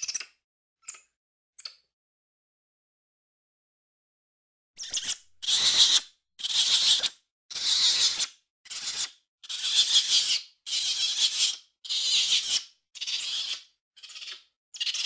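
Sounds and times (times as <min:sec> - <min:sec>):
monkey squealing: 0:04.8 - 0:15.0.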